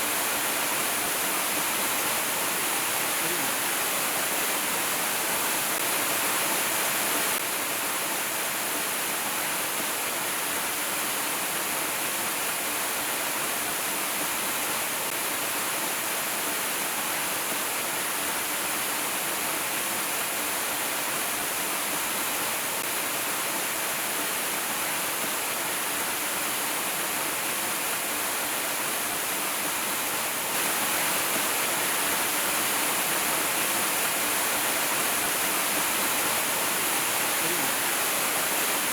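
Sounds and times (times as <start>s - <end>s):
waterfall rushing: 30.6s - 38.9s.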